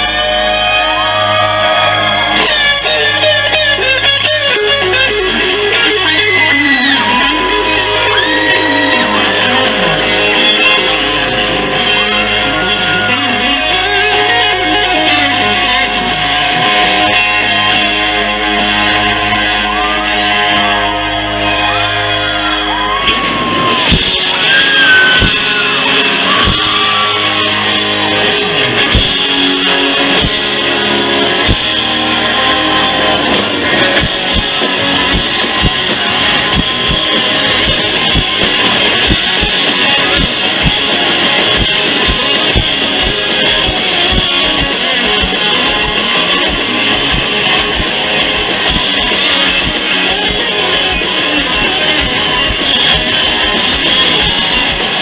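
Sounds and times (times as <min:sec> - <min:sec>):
strummed guitars: 0:00.0 - 0:55.0
drum beat: 0:23.9 - 0:55.0.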